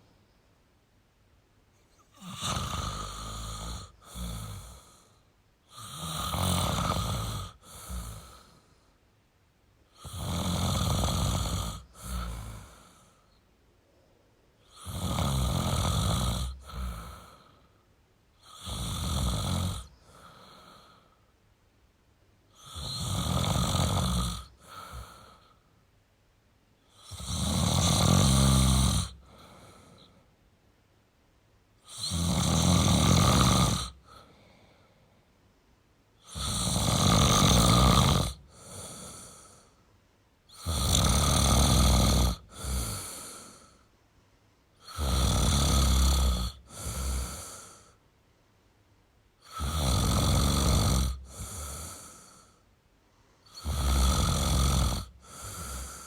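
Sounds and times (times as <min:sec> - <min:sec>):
man snoring: 0:02.1 - 0:08.6, 0:09.9 - 0:13.2, 0:14.6 - 0:17.6, 0:18.4 - 0:21.1, 0:22.6 - 0:25.6, 0:26.9 - 0:30.1, 0:31.8 - 0:34.4, 0:36.2 - 0:39.7, 0:40.5 - 0:43.9, 0:44.8 - 0:48.0, 0:49.4 - 0:52.6, 0:53.5 - 0:56.0
soft breath out: 0:34.0 - 0:35.3, 0:55.2 - 0:56.0.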